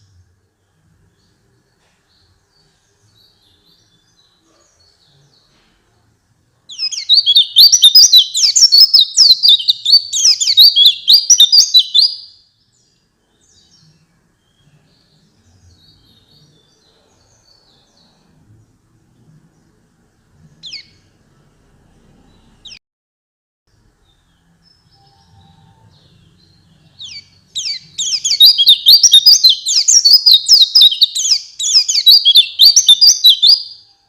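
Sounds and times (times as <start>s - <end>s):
faint soft bird chirps: 0.0s - 6.1s, 6.7s - 22.8s, 23.7s - 34.0s
bird singing fast high warbling: 6.7s - 12.4s, 20.6s - 21.0s, 24.1s - 33.9s.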